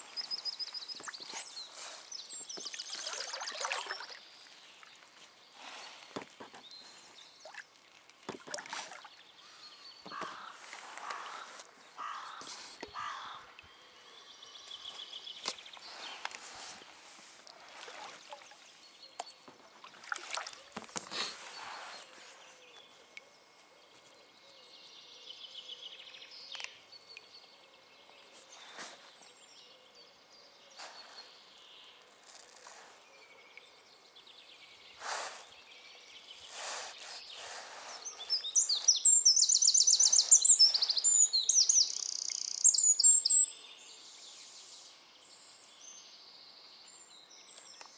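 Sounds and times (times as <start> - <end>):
wild birds singing: 0.0 - 7.8, 8.6 - 47.9
water splashes: 2.4 - 5.2, 7.4 - 9.3, 17.4 - 21.4.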